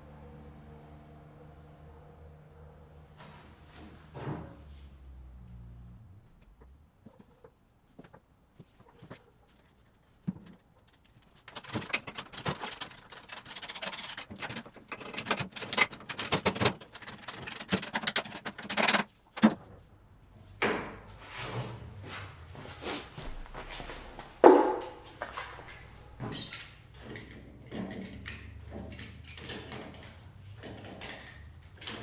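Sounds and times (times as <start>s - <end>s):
hand rubbing and scraping: 6.3s - 18.8s, 21.1s - 27.3s.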